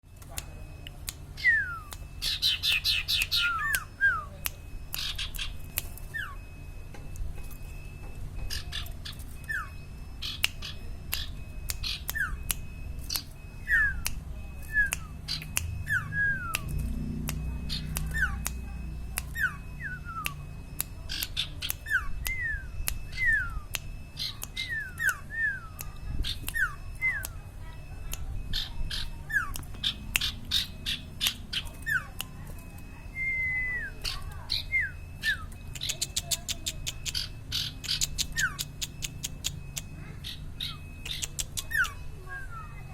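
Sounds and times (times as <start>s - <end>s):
bird clicking notes: 0.1s - 7.7s, 8.5s - 42.0s
songbird whistling: 1.4s - 6.5s, 8.4s - 27.4s, 28.5s - 42.9s.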